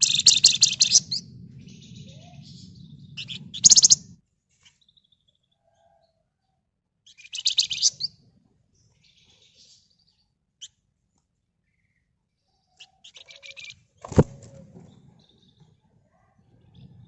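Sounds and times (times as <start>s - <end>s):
bird rasping chatter: 0.0s - 1.3s, 3.2s - 4.0s, 7.2s - 8.1s
songbird singing buzzy trills: 0.0s - 5.8s, 7.1s - 10.8s.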